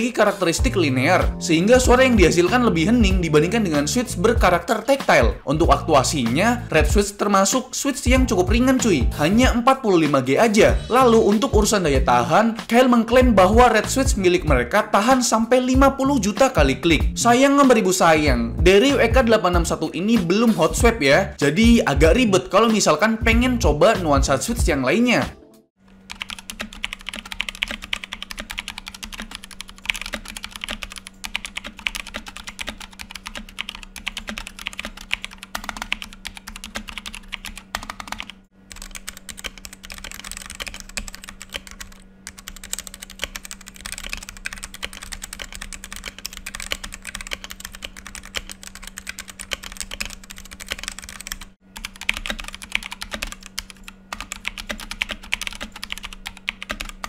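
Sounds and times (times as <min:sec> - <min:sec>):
fast typing on mechanical keyboard: 0:26.0 - 0:57.0.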